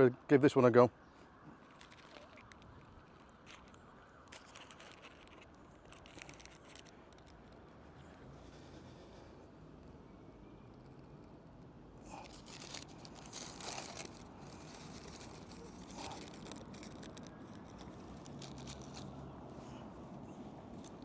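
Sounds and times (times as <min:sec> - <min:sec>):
paper crinkling and tearing: 0:01.6 - 0:07.6, 0:12.1 - 0:19.2.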